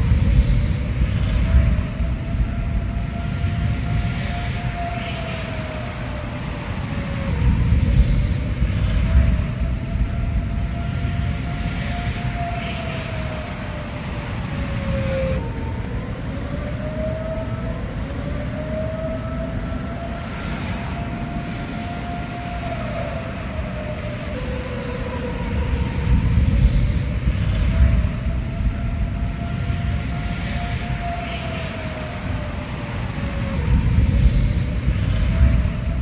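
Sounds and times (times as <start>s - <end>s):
warning siren wailing: 0.0s - 36.0s
low rumble: 25.6s - 30.2s, 33.4s - 36.0s.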